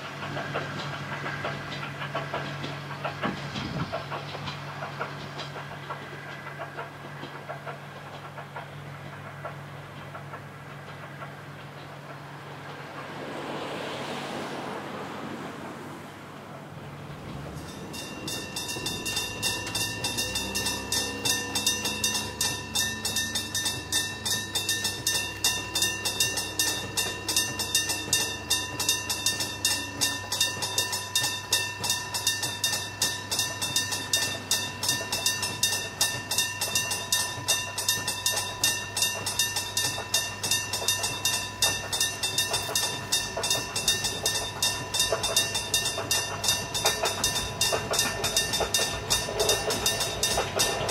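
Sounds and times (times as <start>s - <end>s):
diesel railcar engine drone: 0.0s - 50.9s
level crossing bell ringing: 17.5s - 50.9s.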